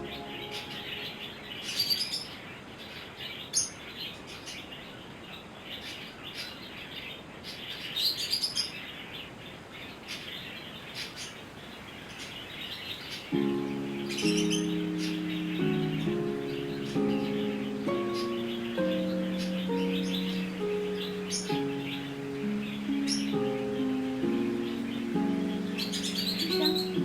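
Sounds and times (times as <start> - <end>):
parrots twittering: 0.0 - 2.4, 13.3 - 27.0.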